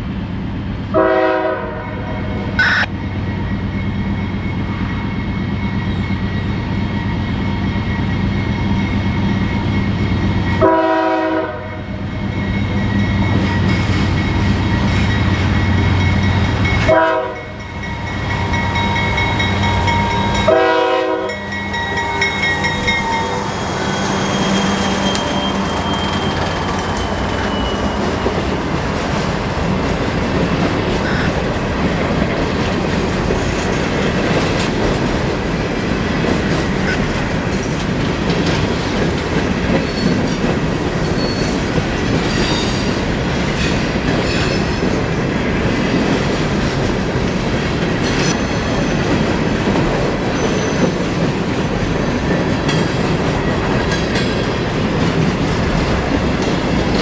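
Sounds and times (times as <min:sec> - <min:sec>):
freight cars rolling on rails: 0:02.6 - 0:57.0.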